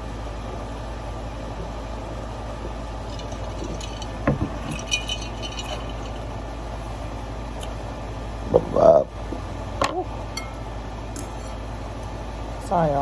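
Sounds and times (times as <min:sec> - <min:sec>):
steady low hum: 0:00.0 - 0:13.0
tableware clinking: 0:03.1 - 0:06.3, 0:10.4 - 0:10.6.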